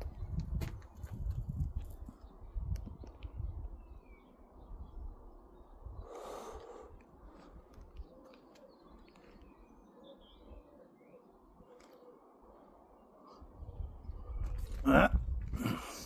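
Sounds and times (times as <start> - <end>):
low wind rumble: 0.0 - 7.3, 13.4 - 16.0.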